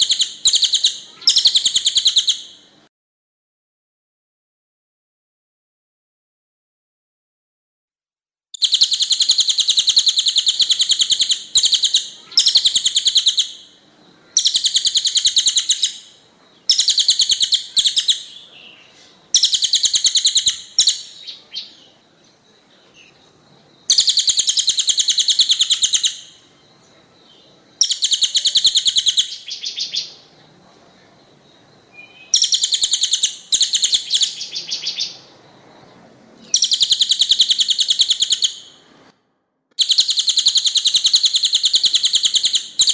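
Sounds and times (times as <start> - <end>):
songbird harsh chattering: 0.0 - 2.5, 8.6 - 13.7, 14.3 - 21.9, 23.9 - 26.4, 27.8 - 30.2, 32.0 - 35.3, 36.5 - 38.8, 39.8 - 42.9.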